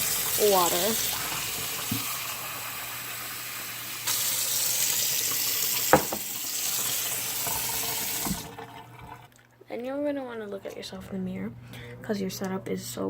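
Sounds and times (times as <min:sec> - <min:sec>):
faucet water running into bowl: 0:00.0 - 0:09.3.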